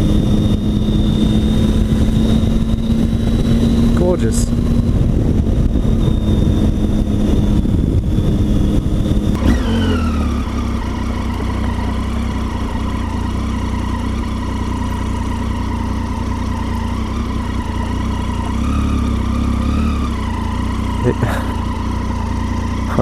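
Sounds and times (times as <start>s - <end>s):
wind noise: 0.0s - 13.1s
motorcycle engine running: 0.0s - 23.0s.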